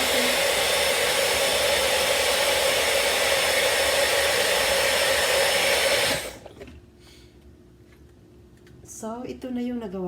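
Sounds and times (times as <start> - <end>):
electric blender running: 0.0 - 6.4.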